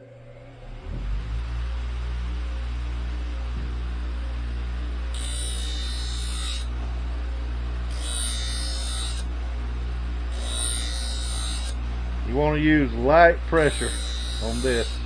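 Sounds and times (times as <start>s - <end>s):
motor hum: 0.0s - 15.0s
knife grinding on sharpening wheel: 5.1s - 6.8s, 7.8s - 15.0s.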